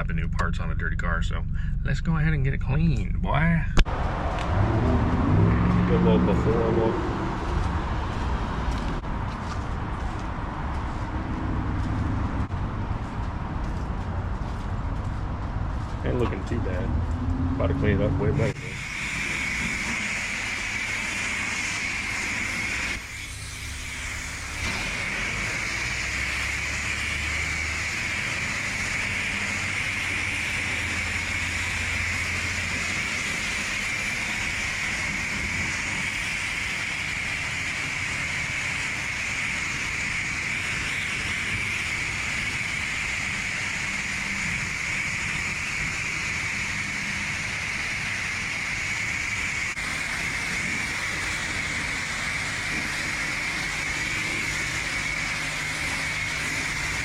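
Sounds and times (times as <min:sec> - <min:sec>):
pressure washer spraying water: 0:18.4 - 0:57.0.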